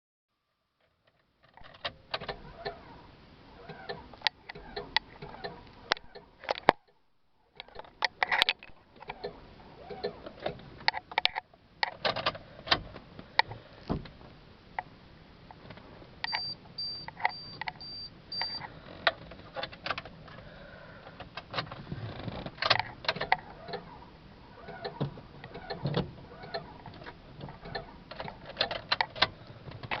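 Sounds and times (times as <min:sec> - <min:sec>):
high electronic warning beeps: 0:16.3 - 0:18.6.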